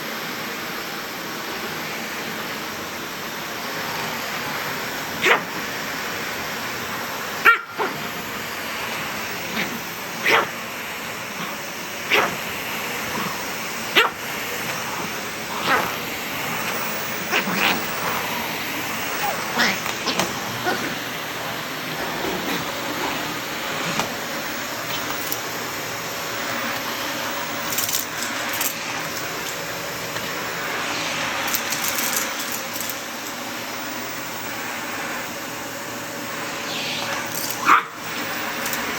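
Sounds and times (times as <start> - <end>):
vacuum cleaner droning: 0.0 - 38.9
small dog barking: 5.2 - 5.6, 7.4 - 8.1, 9.4 - 10.6, 12.1 - 12.4, 13.1 - 16.0, 16.6 - 18.2, 18.9 - 21.0, 37.1 - 38.9
clicks and clatters: 27.7 - 29.6, 31.5 - 33.4, 38.6 - 38.9.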